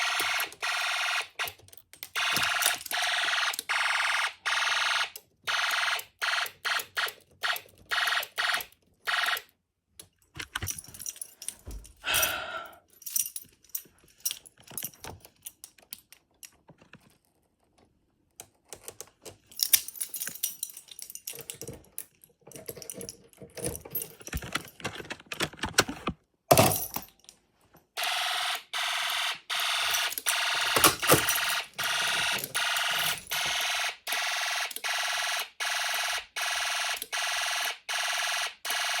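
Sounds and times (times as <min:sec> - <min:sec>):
clicks knocks and rattles: 0:10.0 - 0:12.0, 0:13.5 - 0:27.3.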